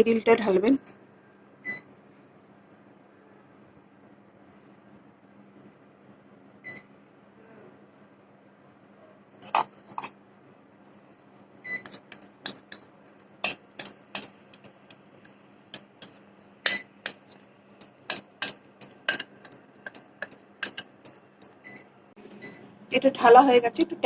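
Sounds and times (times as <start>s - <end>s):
spoon scraping a bowl: 9.4s - 10.1s, 11.8s - 21.6s.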